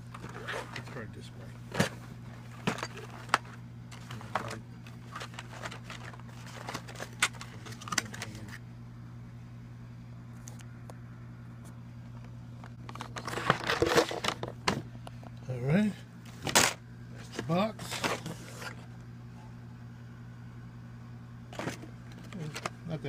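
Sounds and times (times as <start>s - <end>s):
low steady hum: 0.0s - 23.0s
cardboard box rustling and scraping: 0.1s - 1.0s, 1.7s - 7.8s, 17.2s - 18.9s.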